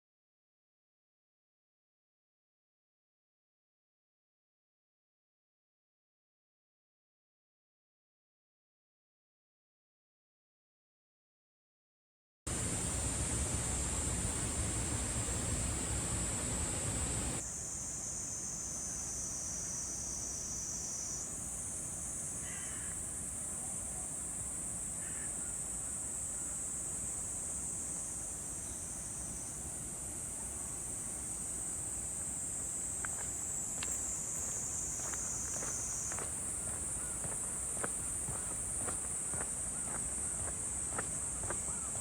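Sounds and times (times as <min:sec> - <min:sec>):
insects chorus: 0:12.5 - 0:42.0
faint chirps: 0:17.4 - 0:42.0.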